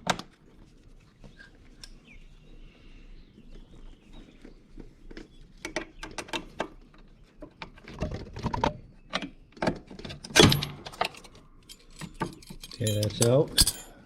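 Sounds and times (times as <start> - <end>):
metallic clip clicks and clinks: 10.4 - 14.0
metal clank: 12.6 - 14.0.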